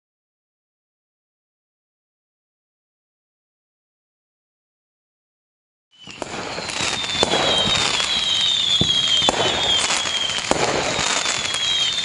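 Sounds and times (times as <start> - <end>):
falling firework whistles: 5.9 - 12.0
fireworks crackling and banging: 6.0 - 12.0.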